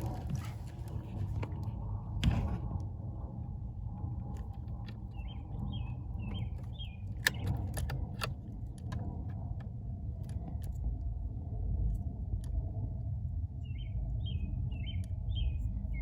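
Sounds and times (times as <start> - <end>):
steady low rumble: 0.0 - 16.0
sharp clicks and rattles: 4.3 - 9.4.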